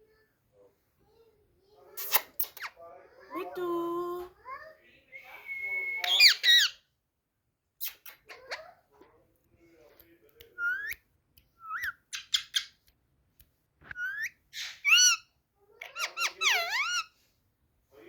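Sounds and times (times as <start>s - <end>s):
parrot squawks and whistles: 5.2s - 6.8s, 13.9s - 15.3s.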